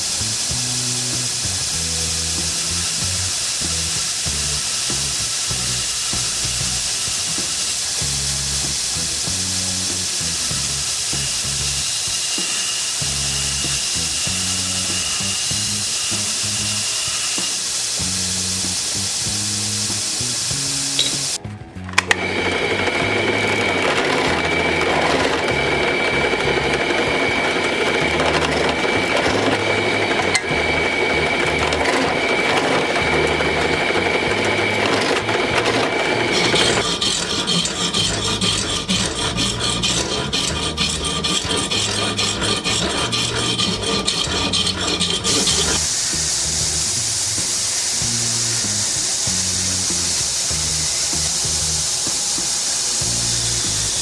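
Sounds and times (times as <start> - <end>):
tool grinding on steel: 0.0 - 54.0
background music: 18.0 - 36.8.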